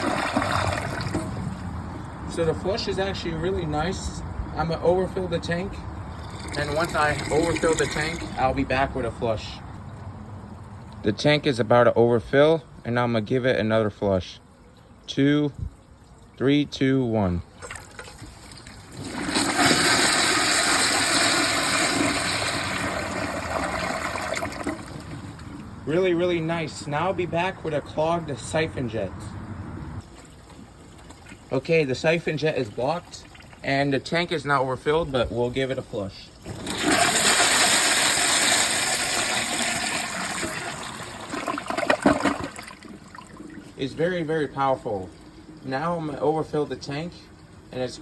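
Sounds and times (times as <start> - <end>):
toilet flushing: 0.0 - 1.6, 6.2 - 8.5, 17.6 - 25.8, 36.4 - 46.7
water splashing: 0.0 - 3.6, 17.2 - 27.2, 35.4 - 47.0.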